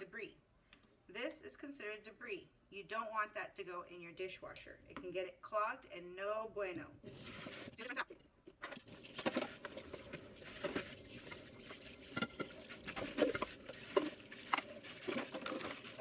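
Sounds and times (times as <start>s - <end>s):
running water: 8.6s - 16.0s
dishes scraping and knocking: 8.7s - 16.0s.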